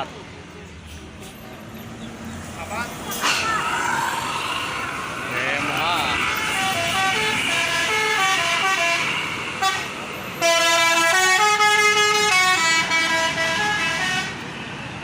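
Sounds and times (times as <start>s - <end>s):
multi-tone bus horn melody: 3.1s - 3.6s, 6.2s - 14.5s.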